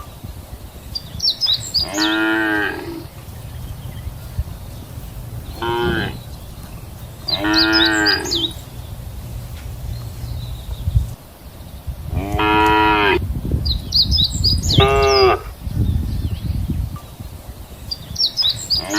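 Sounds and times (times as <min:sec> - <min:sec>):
cattle mooing: 0:01.8 - 0:08.8, 0:12.1 - 0:13.2.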